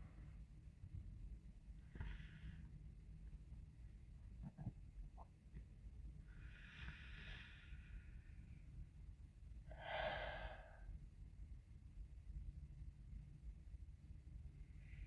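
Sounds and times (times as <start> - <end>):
person breathing: 1.8 - 3.0, 6.2 - 8.7, 9.7 - 11.0.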